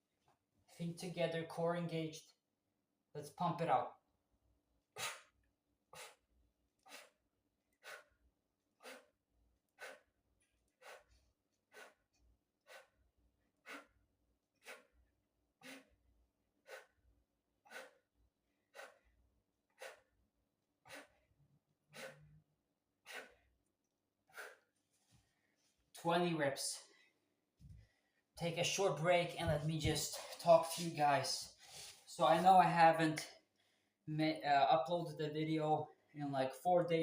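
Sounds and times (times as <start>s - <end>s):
man's short sharp breaths: 21.9s - 22.3s.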